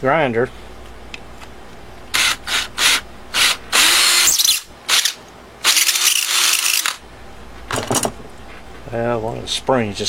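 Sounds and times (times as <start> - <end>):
handheld grinder grinding metal: 2.2 - 7.0.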